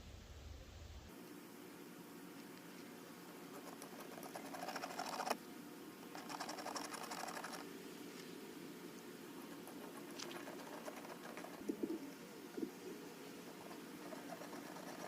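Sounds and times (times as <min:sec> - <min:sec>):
screwdriver tool rapid ticking: 0:03.6 - 0:05.4, 0:06.2 - 0:07.6, 0:14.1 - 0:15.0.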